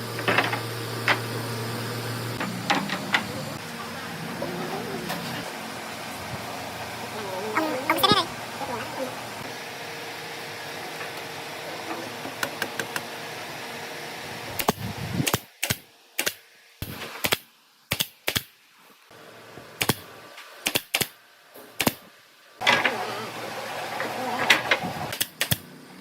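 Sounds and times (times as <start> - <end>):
low workshop hum: 0.0 - 15.3.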